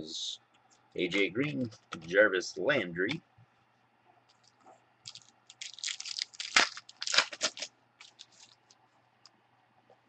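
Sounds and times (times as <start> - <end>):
card packaging crinkling: 5.1 - 8.8.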